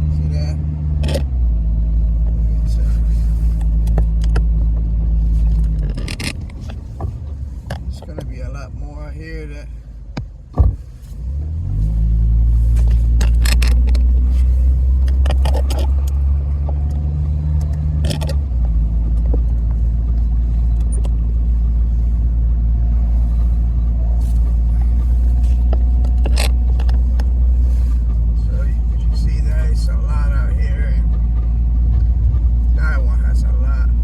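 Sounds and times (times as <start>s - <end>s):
vehicle engine and road rumble: 0.0s - 34.0s
clicks and rattles: 5.5s - 8.4s, 12.8s - 14.2s, 15.0s - 21.4s, 24.1s - 27.4s.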